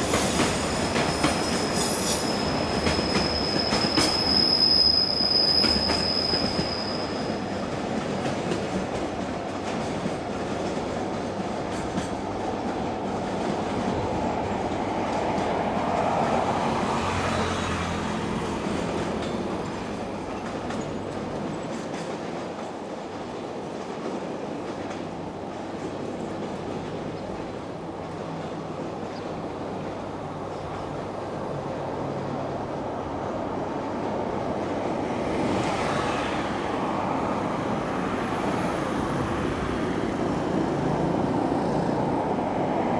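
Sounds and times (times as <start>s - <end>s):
high thin wheel squeal: 0.0s - 7.5s
freight train wheels rumbling: 0.0s - 42.9s.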